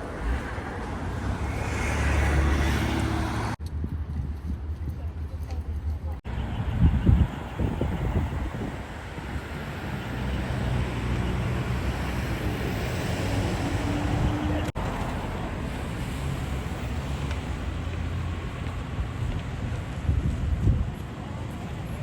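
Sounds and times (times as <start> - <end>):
vehicle engines humming: 0.0 - 3.6, 6.2 - 22.0
road noise: 0.0 - 22.0.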